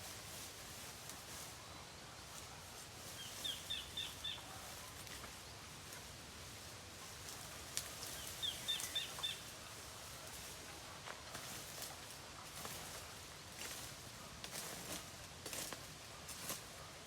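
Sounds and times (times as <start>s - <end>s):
outdoor background noise: 0.0s - 17.0s
bird chirping: 3.2s - 4.4s, 8.2s - 9.4s.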